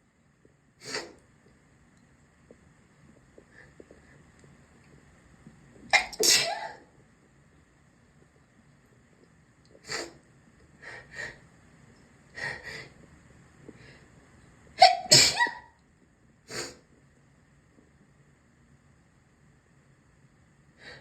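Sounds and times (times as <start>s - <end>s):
person sneezing: 6.0s - 6.8s, 14.8s - 15.7s.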